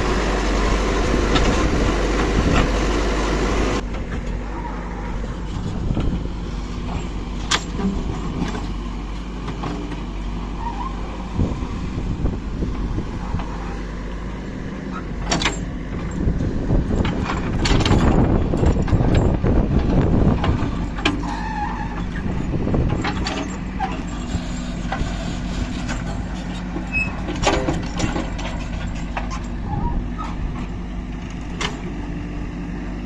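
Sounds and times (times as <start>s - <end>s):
heavy diesel engine running: 0.0s - 33.0s
knocks and clanks: 15.2s - 21.3s, 22.0s - 30.7s.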